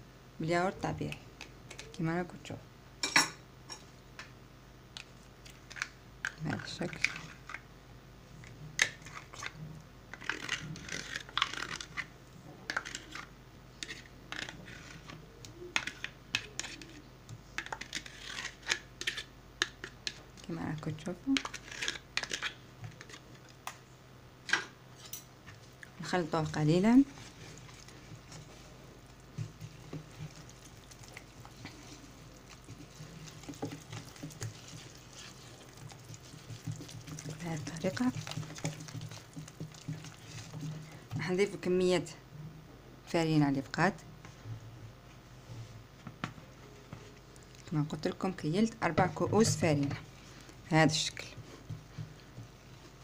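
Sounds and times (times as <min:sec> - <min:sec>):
spoon stirring dough in a bowl: 0:05.0 - 0:07.6, 0:08.4 - 0:23.8, 0:24.5 - 0:41.8, 0:47.4 - 0:53.0
spoon scraping a container: 0:17.6 - 0:19.3, 0:29.4 - 0:41.4.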